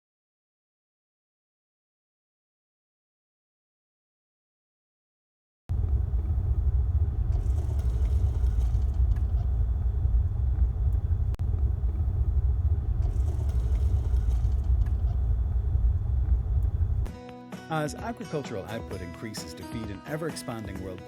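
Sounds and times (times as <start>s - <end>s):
tractor engine rumbling: 5.7s - 17.1s.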